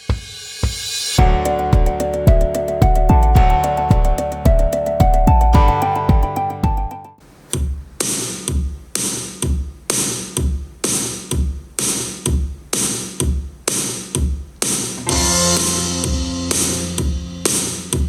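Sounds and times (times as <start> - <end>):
noisy percussion hits: 0.0 - 6.8, 7.6 - 18.0
deep kick drums: 0.1 - 6.9, 7.6 - 18.0
electronic music melodic notes: 1.2 - 7.2, 15.0 - 18.0.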